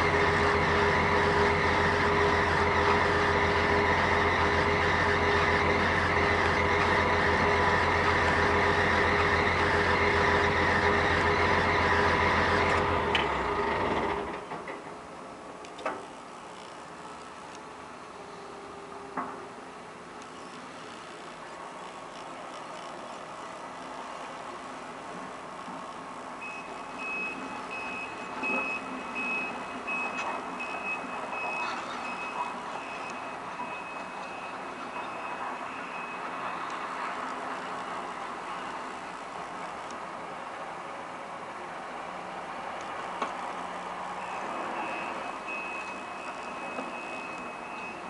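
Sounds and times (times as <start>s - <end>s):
heavy machinery running: 0.0s - 14.8s
diesel engine rumbling: 0.0s - 48.0s
reversing alarm beeping: 26.4s - 37.0s, 44.2s - 48.0s.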